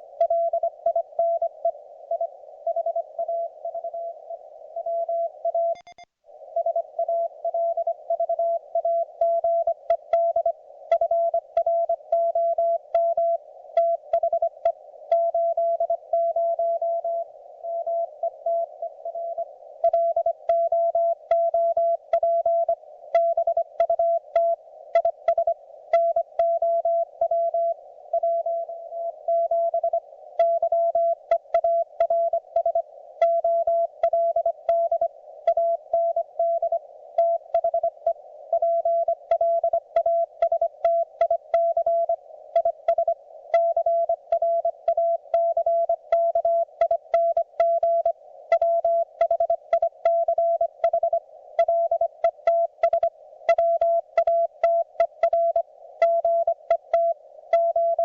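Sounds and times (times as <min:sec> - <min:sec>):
morse code beeps: 0:04.8 - 0:06.0, 0:38.6 - 0:58.0.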